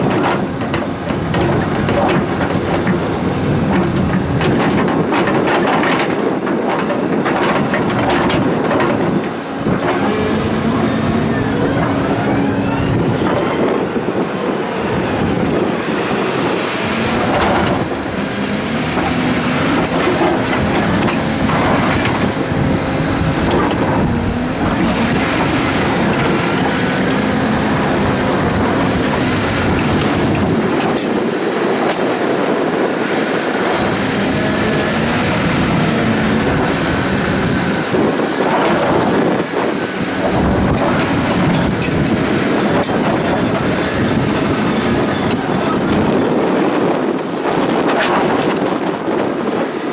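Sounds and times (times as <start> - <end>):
excavator diesel engines: 0.0 - 49.9
metallic squeals: 10.7 - 14.0.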